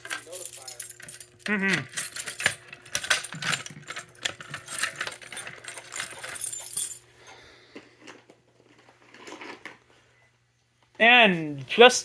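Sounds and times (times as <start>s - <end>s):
metal keys jangling: 0.0s - 7.0s.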